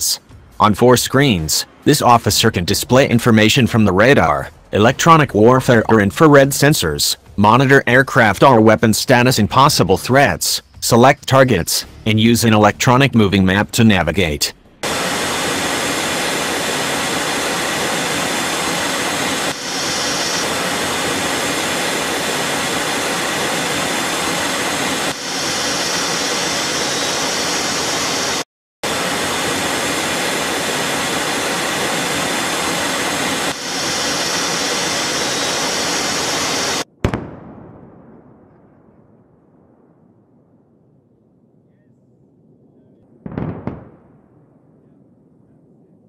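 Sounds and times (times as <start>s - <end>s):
fighter jet engine noise: 10.0s - 36.9s.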